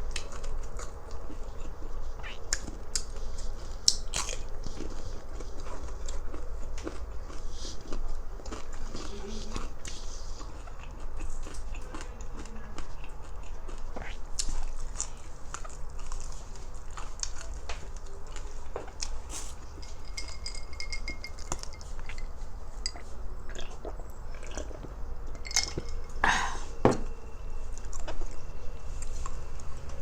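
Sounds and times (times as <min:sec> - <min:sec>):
crunchy food being chewed: 0:00.0 - 0:26.2, 0:27.6 - 0:30.0
plate or utensil clinking: 0:19.8 - 0:22.2.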